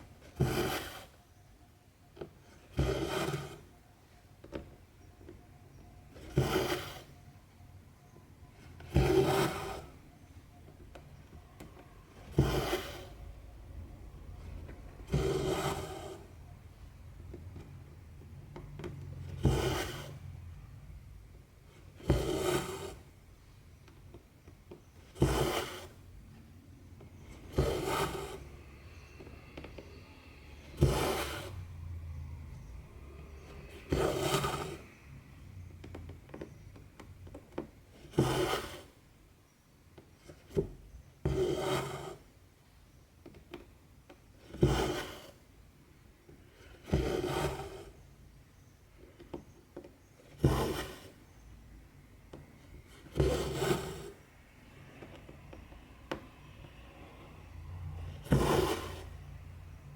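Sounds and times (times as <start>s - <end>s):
thread rasping through fabric: 50.2s - 51.4s, 58.0s - 59.5s.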